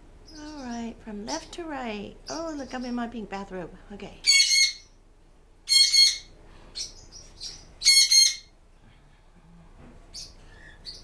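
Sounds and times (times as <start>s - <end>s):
bird harsh squawks: 4.2s - 4.9s, 5.7s - 8.5s
high bird chirps: 4.2s - 5.0s, 5.7s - 8.5s, 10.1s - 11.0s.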